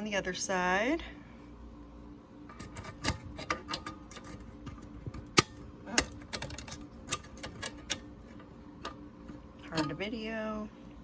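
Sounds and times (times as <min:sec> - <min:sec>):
metal typewriter parts clicking: 0:02.5 - 0:10.0.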